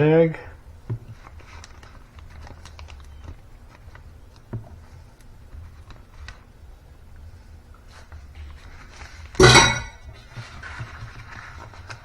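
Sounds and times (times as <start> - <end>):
low steady hum: 0.0 - 12.0
plastic bag rustling and clicks: 0.9 - 6.5.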